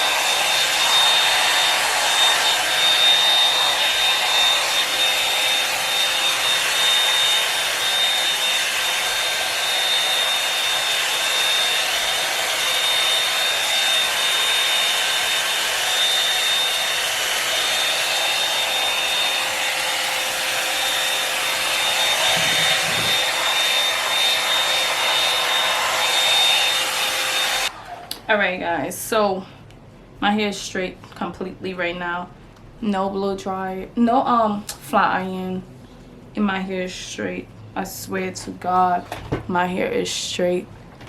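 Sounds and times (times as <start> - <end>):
hot air brush blowing with whine: 0.0 - 27.7.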